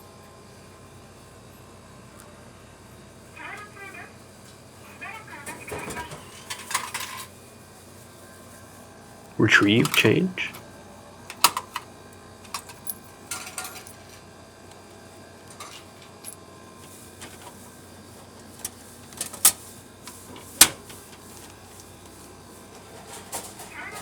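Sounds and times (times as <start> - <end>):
coins clinking: 9.4 - 10.6, 12.5 - 14.2.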